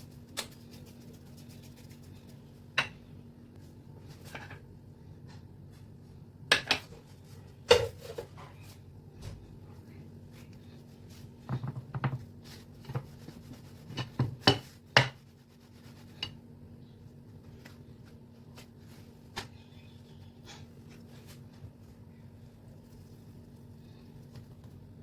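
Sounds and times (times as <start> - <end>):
faint steady hum: 0.0 - 25.0
food prep knocks and taps: 11.5 - 12.2.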